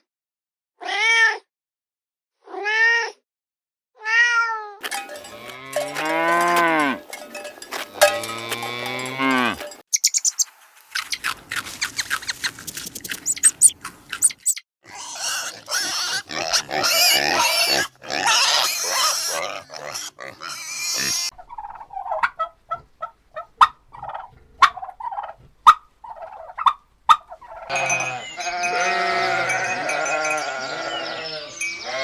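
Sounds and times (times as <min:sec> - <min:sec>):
pigs grunting and squealing: 0:04.8 - 0:09.8, 0:13.3 - 0:21.4, 0:27.7 - 0:32.0.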